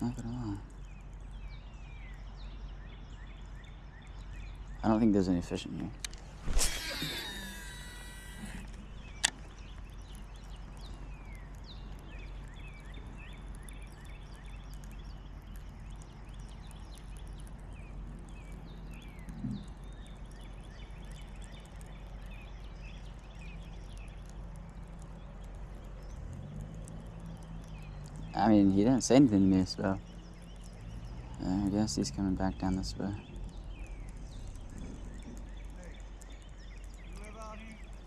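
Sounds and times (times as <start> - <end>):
faint bird chirps: 0.0 - 38.0
steady low rumble: 0.0 - 38.0.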